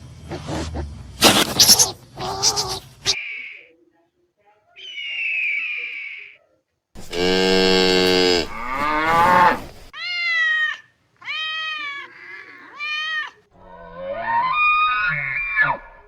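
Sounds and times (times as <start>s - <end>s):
low animal call: 7.0s - 9.9s, 11.8s - 16.0s
cat meowing: 8.5s - 16.0s.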